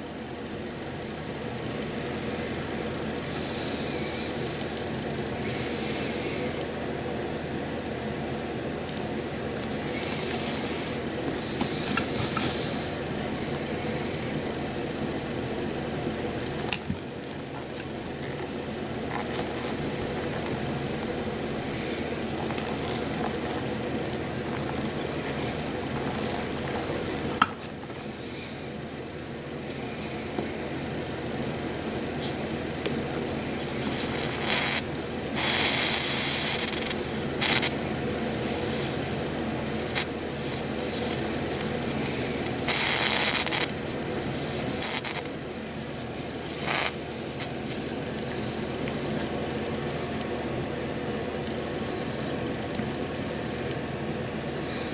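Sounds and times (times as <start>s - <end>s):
steady hum: 0.0s - 54.9s
solder sizzling and hissing: 2.3s - 7.7s, 9.2s - 49.3s.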